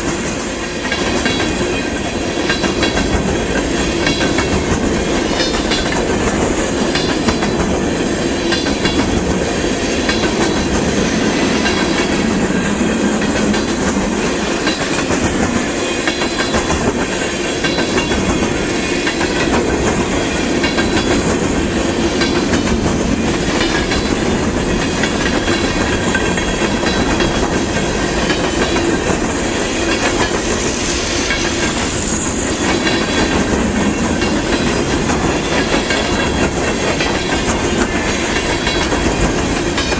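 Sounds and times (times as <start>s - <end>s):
freight train rumbling past: 0.0s - 39.9s
train wheels clacking over rail joints: 0.0s - 39.9s.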